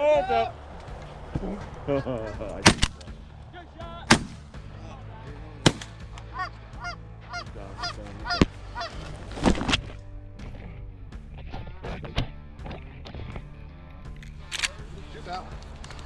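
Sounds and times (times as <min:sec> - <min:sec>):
shotgun shots: 0:02.6 - 0:03.1, 0:04.1 - 0:04.6, 0:05.6 - 0:06.2
geese honking: 0:05.7 - 0:09.2.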